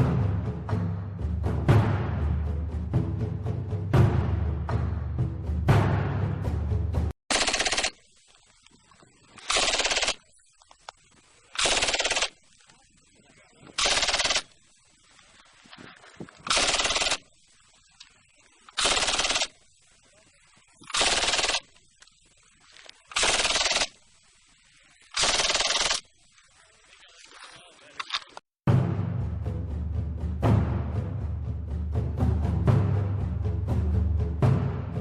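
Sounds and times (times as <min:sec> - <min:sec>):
machine gun firing bursts: 0:07.3 - 0:08.0, 0:09.4 - 0:10.2, 0:11.5 - 0:12.4, 0:13.8 - 0:14.5, 0:16.4 - 0:17.3, 0:18.8 - 0:19.5, 0:20.9 - 0:21.7, 0:23.1 - 0:24.0, 0:25.2 - 0:26.0.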